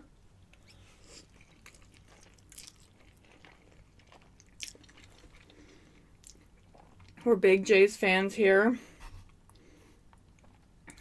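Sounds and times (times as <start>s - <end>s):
person chewing: 0.4s - 7.2s.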